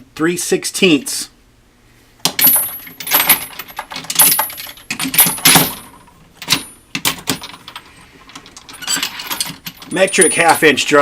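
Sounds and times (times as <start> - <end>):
steel sockets clinking in metal toolbox: 2.4 - 10.8.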